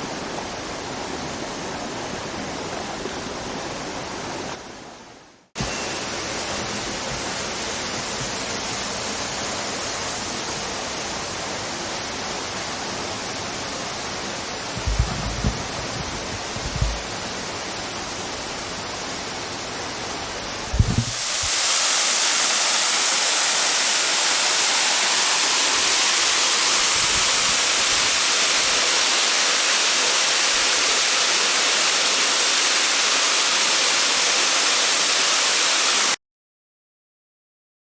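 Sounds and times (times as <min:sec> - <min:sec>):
low thump: 0:14.8 - 0:17.0
waterfall rushing: 0:20.7 - 0:36.2.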